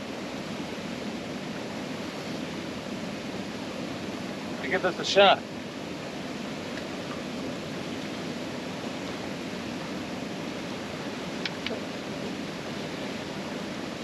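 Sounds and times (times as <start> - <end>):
water rushing over spillway: 0.0 - 14.0.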